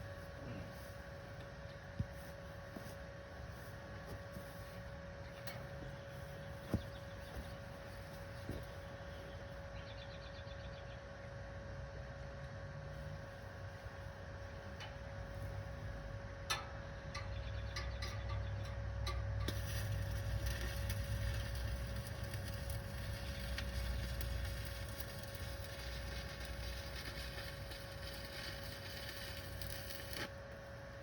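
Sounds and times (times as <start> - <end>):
welding arc crackling: 19.1 - 30.7.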